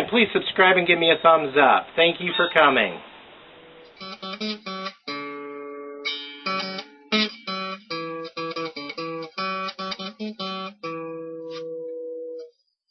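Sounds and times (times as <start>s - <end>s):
acoustic guitar strumming: 3.6s - 12.5s.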